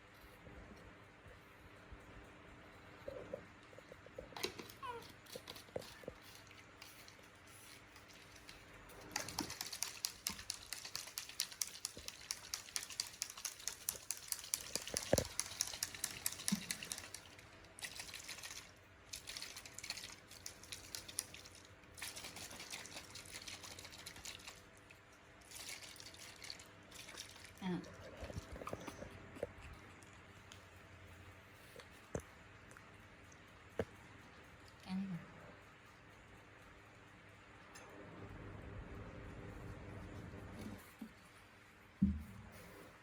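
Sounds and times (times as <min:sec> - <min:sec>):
baby monkey suckling: 0:04.4 - 0:24.7, 0:25.5 - 0:30.8.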